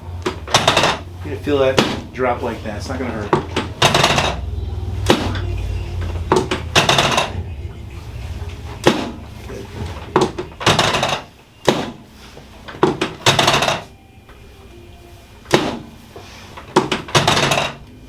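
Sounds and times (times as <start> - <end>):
table sections dropping with thunks: 0.2 - 1.1, 1.8 - 2.1, 3.2 - 5.5, 6.1 - 7.4, 9.9 - 12.0, 12.7 - 13.9, 15.5 - 15.9, 16.6 - 17.8
rattling knock: 0.2 - 1.2, 3.2 - 7.6, 8.4 - 12.0, 16.7 - 17.8.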